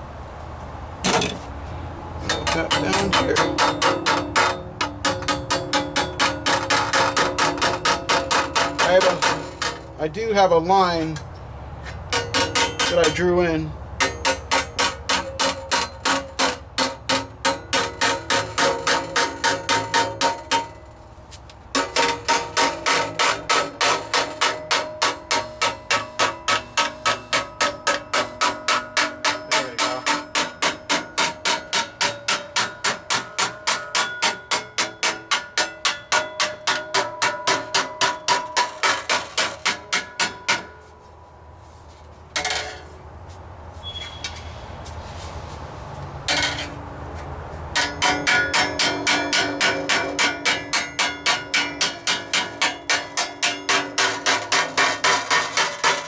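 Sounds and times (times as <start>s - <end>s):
hammer striking sheet metal: 2.2s - 10.1s, 12.1s - 21.0s, 21.7s - 40.9s, 47.8s - 56.0s
sheet metal ringing: 2.2s - 11.3s, 12.1s - 21.0s, 21.7s - 41.0s, 47.7s - 56.0s.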